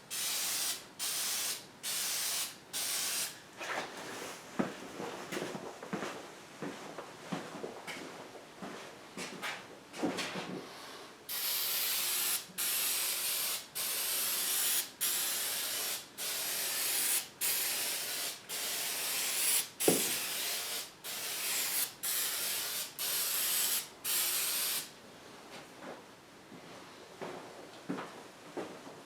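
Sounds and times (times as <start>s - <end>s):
aerosol spray can hissing: 0.1s - 3.4s, 11.3s - 24.9s.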